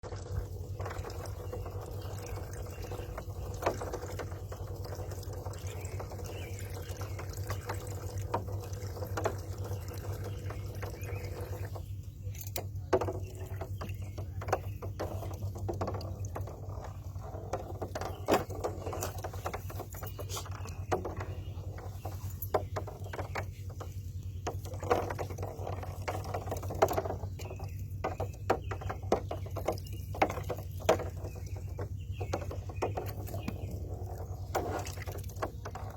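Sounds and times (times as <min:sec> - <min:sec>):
steady low hum: 0:00.0 - 0:35.9
water splashing and sloshing: 0:00.0 - 0:35.9.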